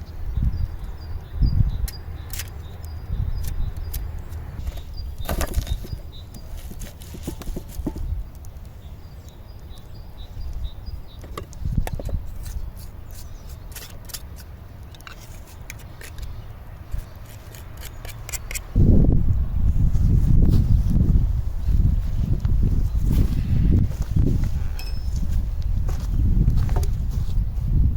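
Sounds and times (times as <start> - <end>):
wind rumbling on microphone: 0.0 - 8.5, 9.6 - 13.8, 16.0 - 27.9
handling clicks and knocks: 2.3 - 9.8, 11.1 - 12.3.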